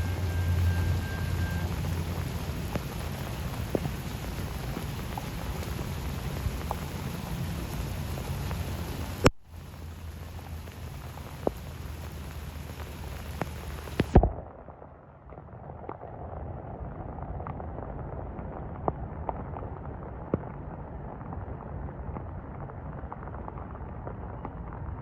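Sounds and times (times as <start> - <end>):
steady low noise: 0.0 - 25.0
microphone crackling pops: 10.4 - 14.8.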